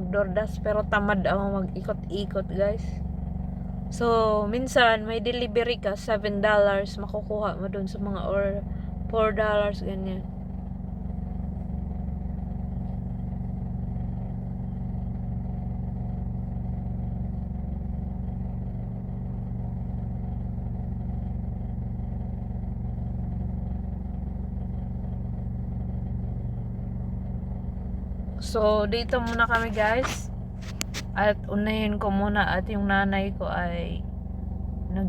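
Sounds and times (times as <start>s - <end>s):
car engine and road hum: 0.0s - 35.0s.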